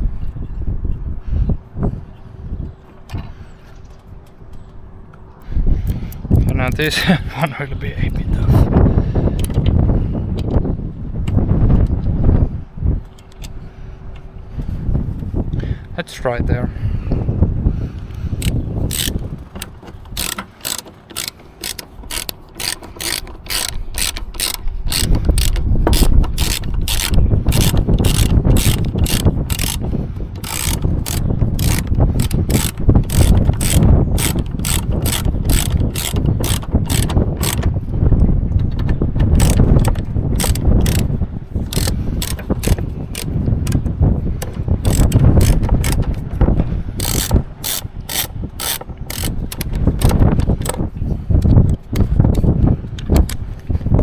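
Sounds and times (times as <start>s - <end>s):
ratchet wrench clicking: 18.4s - 37.7s, 39.4s - 46.2s, 47.0s - 50.8s.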